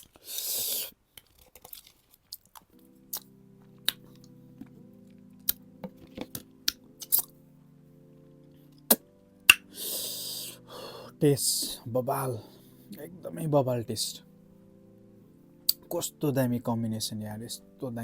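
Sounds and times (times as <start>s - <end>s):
person chewing: 0.0s - 4.2s, 7.0s - 7.3s
soft background music: 2.4s - 18.0s
mouth clicks and smacks: 6.7s - 7.3s.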